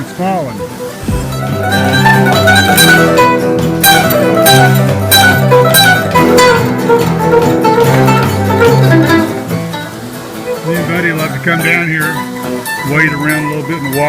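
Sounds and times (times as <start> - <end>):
guitar and plucked strings: 0.0 - 14.0
bass line: 1.0 - 3.2.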